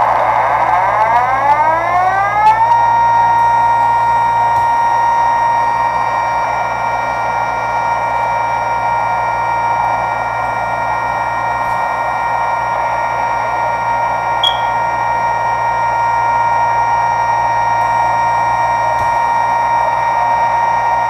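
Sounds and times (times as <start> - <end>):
steady electronic alarm tone: 14.1 - 21.0
brief click: 14.4 - 14.8.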